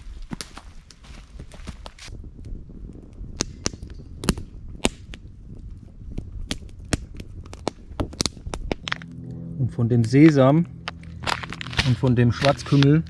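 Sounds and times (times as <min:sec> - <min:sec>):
campfire crackling: 0:00.0 - 0:13.0
pops of burning wood: 0:00.2 - 0:09.3, 0:10.0 - 0:13.0.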